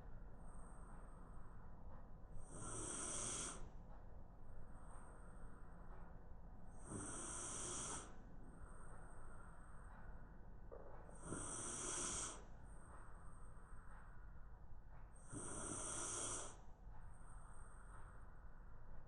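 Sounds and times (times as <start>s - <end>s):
dog snoring: 2.4s - 3.7s, 6.8s - 8.2s, 11.1s - 12.5s, 15.1s - 16.6s.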